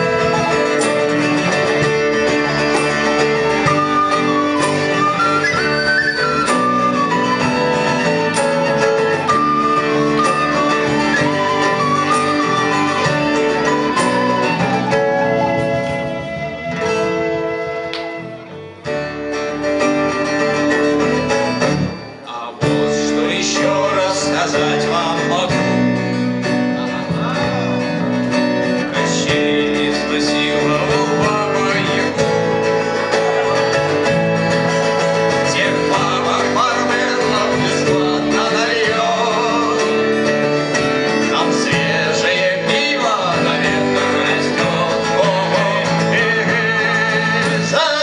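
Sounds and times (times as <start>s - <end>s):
acoustic guitar strummed and plucked: 0.0s - 48.0s
band playing instrumental: 0.0s - 48.0s
person singing: 22.2s - 25.9s, 28.8s - 33.8s, 35.3s - 48.0s.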